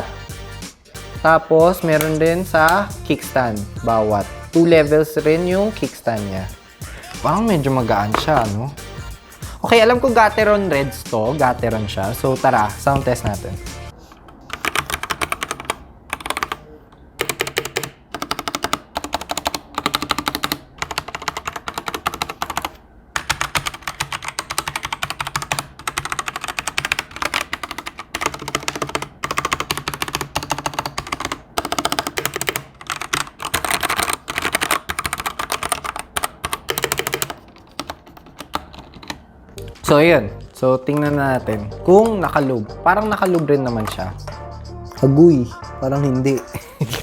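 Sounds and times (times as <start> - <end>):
mechanical keyboard key clacks: 14.4 - 16.6, 17.2 - 39.2.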